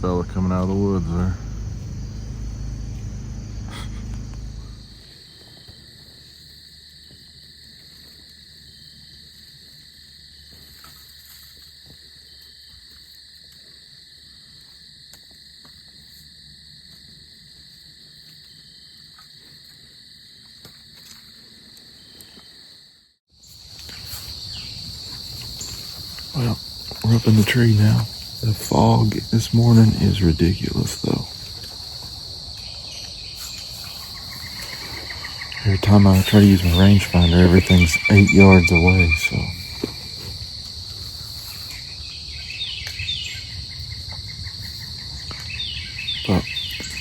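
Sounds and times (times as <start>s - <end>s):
generator humming: 0.0s - 5.3s, 26.2s - 40.2s
night insects chirring: 0.0s - 47.0s.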